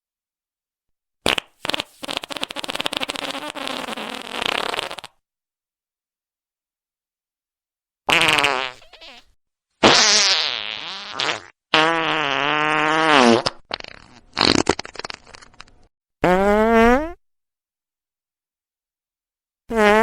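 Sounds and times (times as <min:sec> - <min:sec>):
farts: 0:01.3 - 0:05.2, 0:08.1 - 0:17.2, 0:19.7 - 0:20.0.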